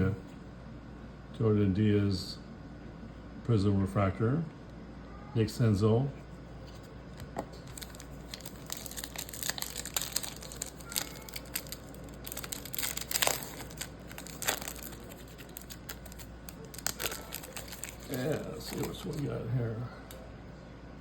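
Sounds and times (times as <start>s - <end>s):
plastic wrapper crinkling and tearing: 6.8s - 19.4s.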